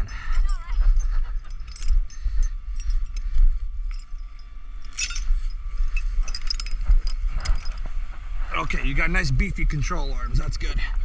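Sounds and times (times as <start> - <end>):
metal chain clinking and rattling: 0.0 - 7.9
low rumble: 0.0 - 11.0.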